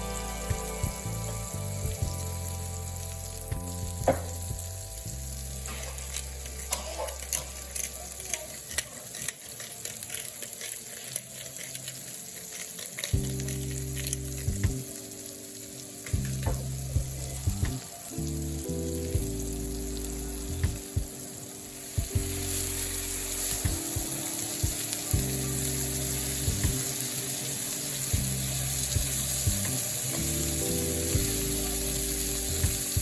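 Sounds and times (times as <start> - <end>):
background music with bass: 0.0 - 8.2, 13.2 - 15.0, 16.0 - 27.1, 27.8 - 33.0
food sizzling in a pan: 0.0 - 33.0.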